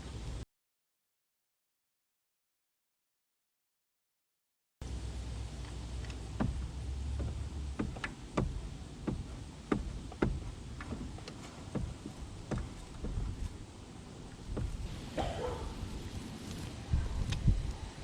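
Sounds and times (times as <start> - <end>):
low steady hum: 4.8 - 18.0.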